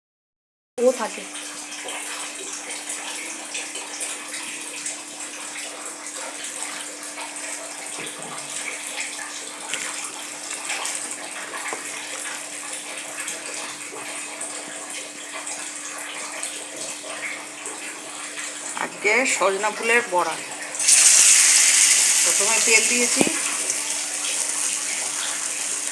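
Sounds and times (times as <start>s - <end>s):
water running from a tap: 20.8s - 25.9s.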